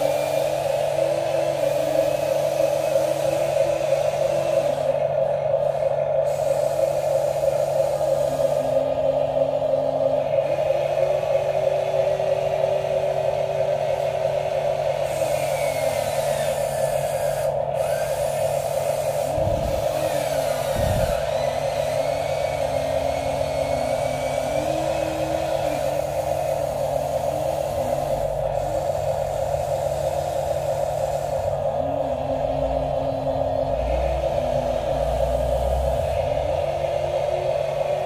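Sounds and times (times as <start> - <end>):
toy electric motors whining: 15.0 - 32.8.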